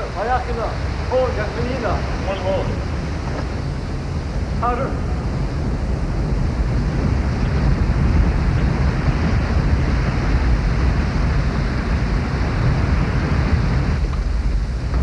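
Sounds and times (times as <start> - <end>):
waterfall rushing: 0.0 - 5.9.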